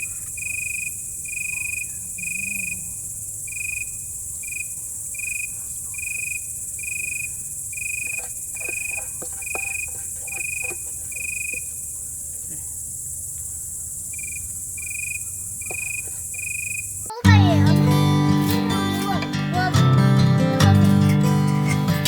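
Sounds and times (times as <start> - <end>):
constant high hiss: 0.0 - 22.0
cricket chirping: 0.0 - 22.0
faint knocks: 8.1 - 11.7, 15.6 - 16.3.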